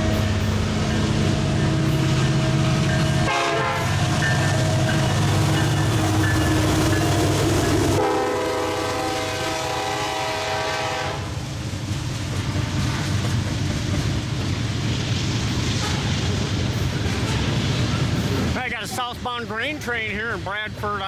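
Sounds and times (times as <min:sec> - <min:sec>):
train horn blast: 0:00.0 - 0:04.9, 0:07.8 - 0:11.4
diesel locomotive rumble: 0:00.0 - 0:21.0
train wheels rolling on rails: 0:00.0 - 0:21.0.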